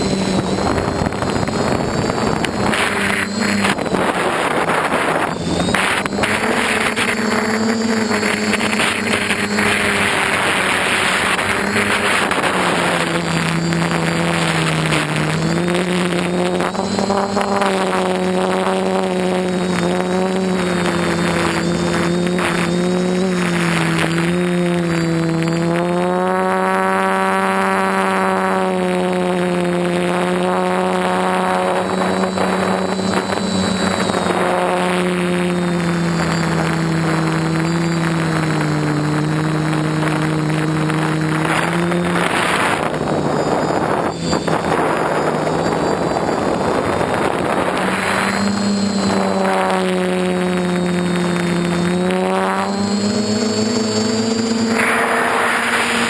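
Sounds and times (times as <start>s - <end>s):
drone motors buzzing: 0.0s - 56.0s
wind noise: 0.0s - 56.0s.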